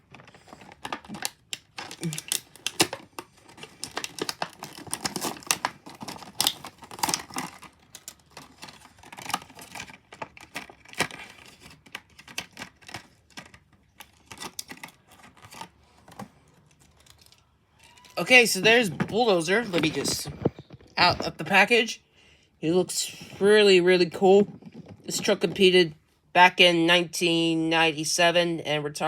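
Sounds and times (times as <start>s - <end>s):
blister package being torn open: 0.0s - 18.2s
plastic crackling and crinkling: 0.0s - 21.9s, 23.2s - 25.8s.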